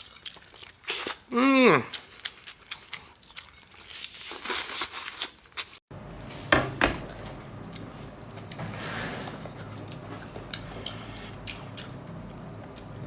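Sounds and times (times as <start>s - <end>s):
steady low hum: 5.9s - 13.0s.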